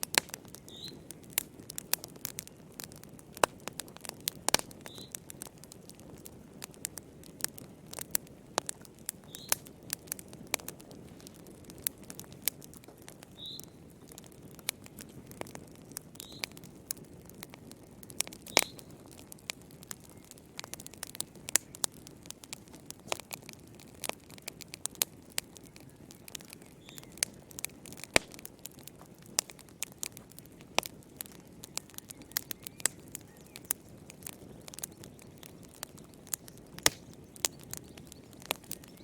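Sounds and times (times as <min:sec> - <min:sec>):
fire crackling and popping: 0:00.0 - 0:39.0
low rumble of flames: 0:00.0 - 0:39.0.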